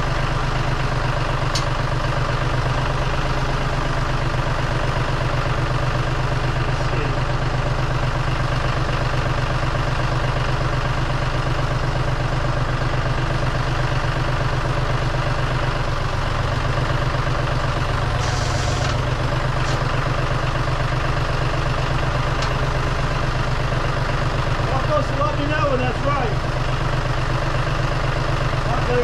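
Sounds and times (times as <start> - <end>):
engine idling: 0.0 - 29.0.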